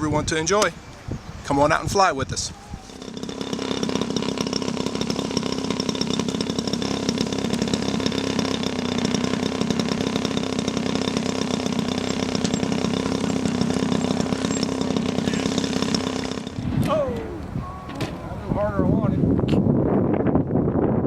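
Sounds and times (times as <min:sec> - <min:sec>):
model airplane engine buzzing: 0:02.5 - 0:18.2.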